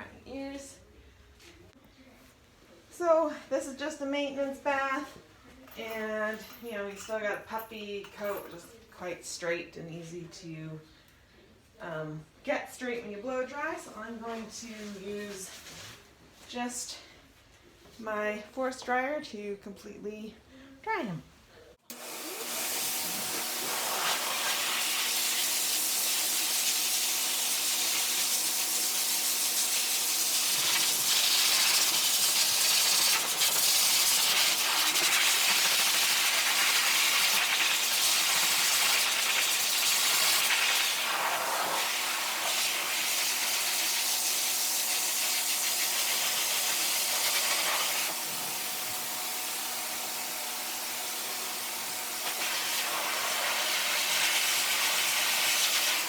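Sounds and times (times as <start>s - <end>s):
pet dryer blowing air: 21.9s - 56.0s.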